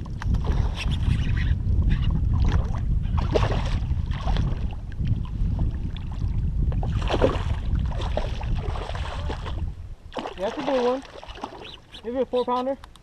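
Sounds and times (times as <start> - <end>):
wind rumbling on microphone: 0.0 - 13.0
splashy bursts: 10.1 - 11.8.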